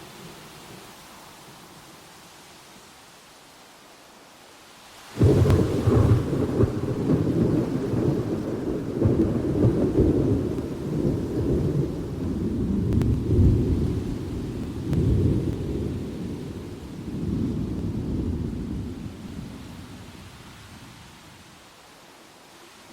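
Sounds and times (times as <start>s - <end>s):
faint rain hiss: 0.0s - 22.9s
thunder rumbling: 5.2s - 20.4s.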